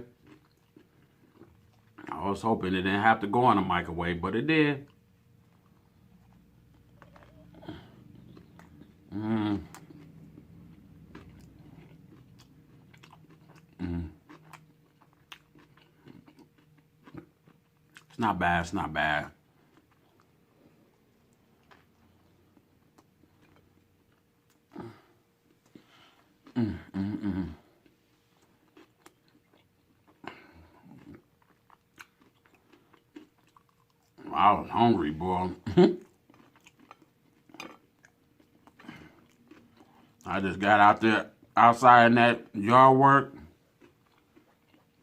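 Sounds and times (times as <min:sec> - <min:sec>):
person chewing food: 0:00.1 - 0:02.4, 0:04.8 - 0:40.3, 0:43.3 - 0:45.0
person humming mm-mm: 0:09.1 - 0:09.8, 0:13.8 - 0:14.2, 0:26.5 - 0:27.7.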